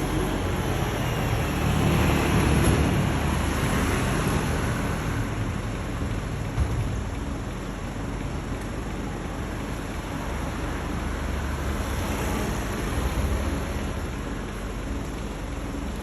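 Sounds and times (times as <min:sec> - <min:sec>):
diesel engine rumble: 0:00.0 - 0:16.0.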